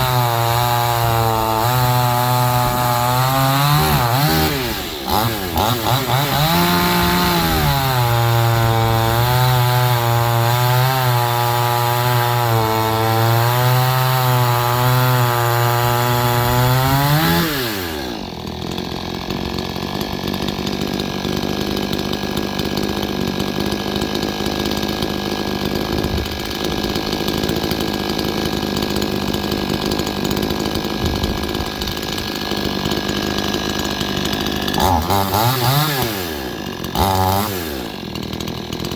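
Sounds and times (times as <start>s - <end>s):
chainsaw engine revving and idling: 0.0s - 38.9s.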